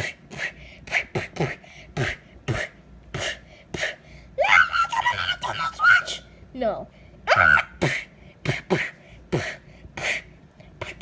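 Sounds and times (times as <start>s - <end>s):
person making vocal outbursts: 4.4s - 6.2s, 7.3s - 8.7s.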